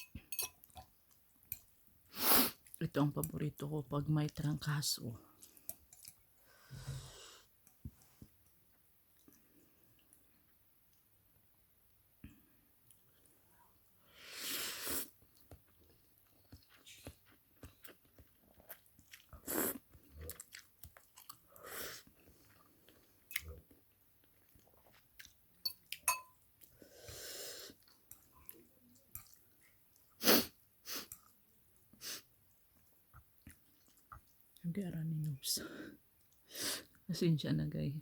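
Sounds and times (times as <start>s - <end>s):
slurping noodles and soup: 2.1s - 2.8s, 14.2s - 15.2s, 18.7s - 20.6s, 30.1s - 31.3s
person chewing: 5.3s - 6.3s, 14.9s - 34.6s.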